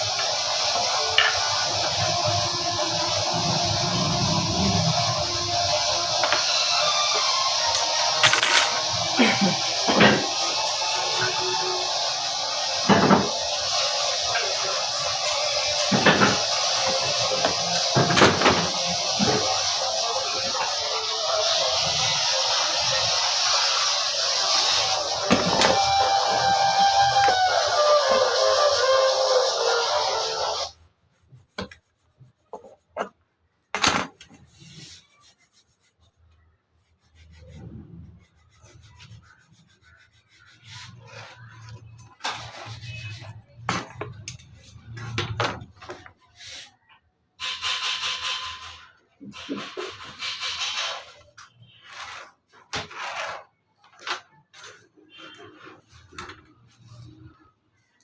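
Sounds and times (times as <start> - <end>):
tool scraping wood: 31.2 - 33.2.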